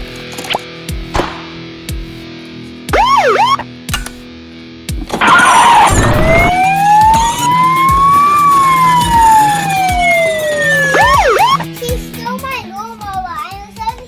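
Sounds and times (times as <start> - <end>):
police siren wailing: 2.9 - 3.7, 5.1 - 11.7
siren yelps: 2.9 - 3.7, 5.2 - 11.7.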